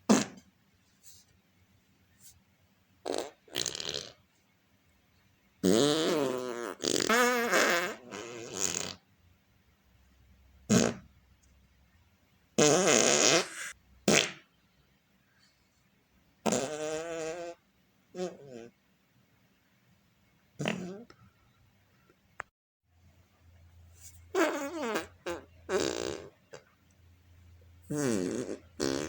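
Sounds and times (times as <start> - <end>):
fart sounds: 0.0 - 0.5, 3.0 - 4.2, 5.6 - 9.0, 10.7 - 11.1, 12.6 - 14.5, 16.4 - 17.6, 18.2 - 18.8, 20.6 - 21.2, 24.3 - 26.7, 27.8 - 29.0.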